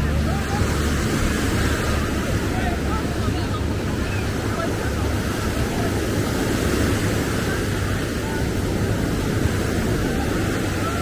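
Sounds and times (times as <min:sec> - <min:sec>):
surf: 0:00.0 - 0:11.0.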